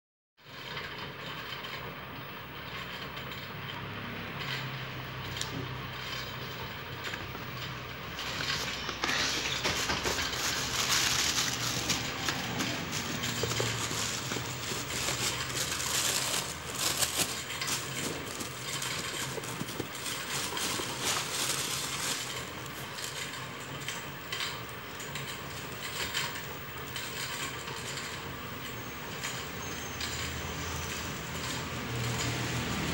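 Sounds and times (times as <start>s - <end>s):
paper wrapping rustling and crinkling: 5.2s - 24.6s.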